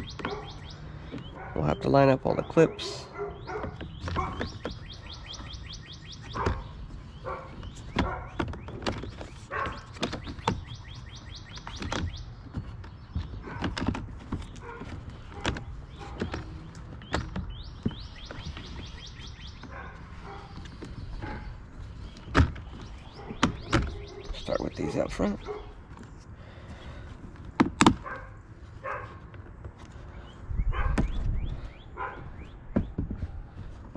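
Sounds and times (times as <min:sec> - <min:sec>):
bird trilling: 0:00.0 - 0:01.5, 0:03.2 - 0:08.3, 0:17.1 - 0:21.5, 0:22.6 - 0:25.7.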